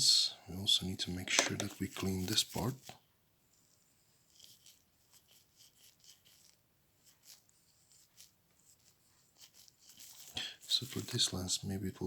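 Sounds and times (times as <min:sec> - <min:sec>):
soft rubbing: 0:01.2 - 0:12.0.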